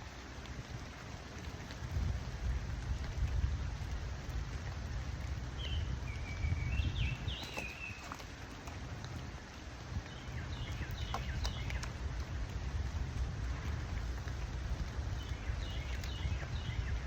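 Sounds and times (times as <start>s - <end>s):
steady rain falling: 0.0s - 17.0s
bird chirping: 5.6s - 8.2s, 10.1s - 11.9s, 15.2s - 17.0s.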